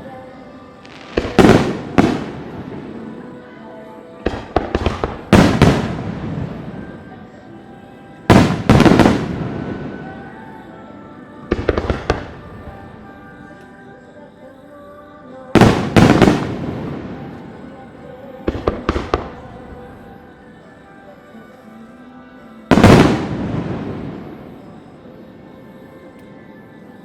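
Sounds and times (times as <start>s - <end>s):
fireworks booming and cracking: 0.9s - 3.2s, 4.3s - 7.0s, 8.3s - 10.2s, 11.5s - 12.8s, 15.6s - 17.6s, 18.5s - 19.9s, 22.7s - 24.3s.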